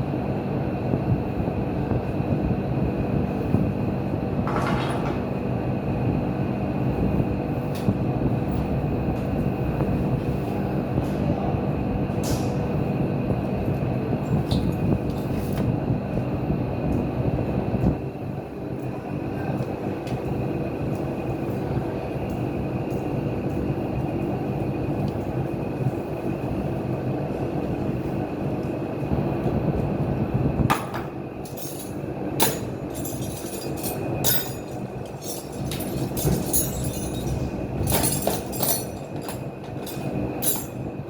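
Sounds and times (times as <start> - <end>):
steady mechanical rumble: 0.0 - 41.0
sharp metallic clinks and knocks: 30.7 - 40.9.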